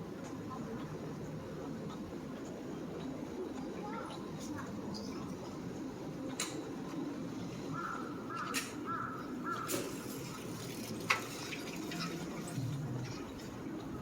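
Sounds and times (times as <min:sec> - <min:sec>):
low hum of street noise: 0:00.0 - 0:14.0
crow cawing: 0:07.7 - 0:09.9.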